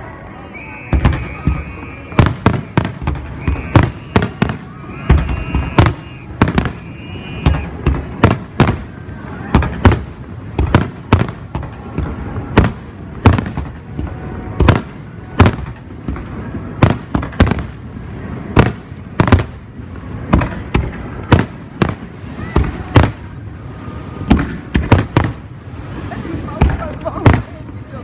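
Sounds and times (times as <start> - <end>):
fireworks bangs: 0.5 - 8.9.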